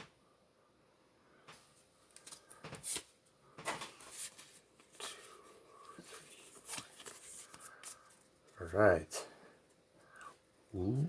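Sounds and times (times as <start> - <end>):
foil wrapper and cards rustling: 2.1 - 8.2.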